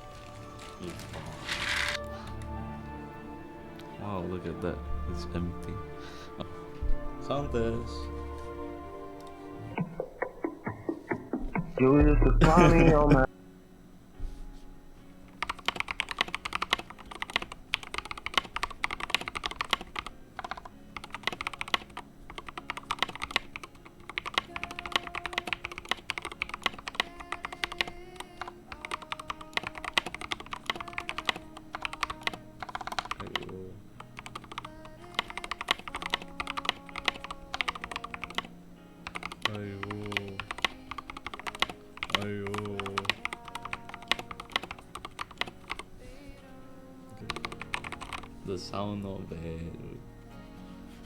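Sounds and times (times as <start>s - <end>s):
mechanical keyboard typing: 0.2s - 2.0s, 15.4s - 45.9s, 47.3s - 48.3s.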